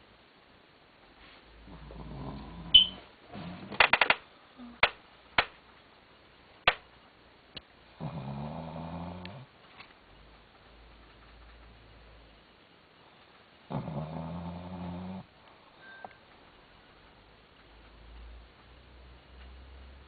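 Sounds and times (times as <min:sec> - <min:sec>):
dog snoring: 0:01.6 - 0:03.7, 0:07.9 - 0:09.5, 0:13.7 - 0:15.3
sharp clicks: 0:03.8 - 0:04.2.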